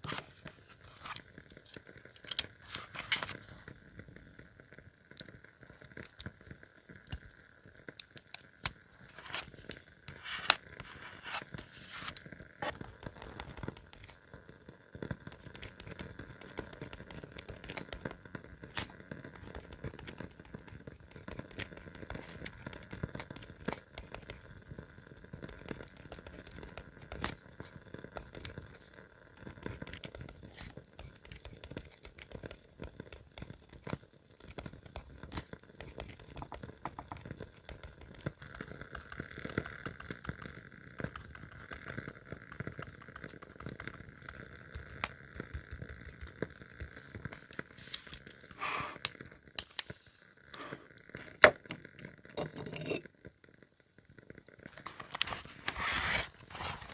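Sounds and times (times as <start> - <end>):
paper rustling and tearing: 9.0 - 12.2, 54.7 - 56.9.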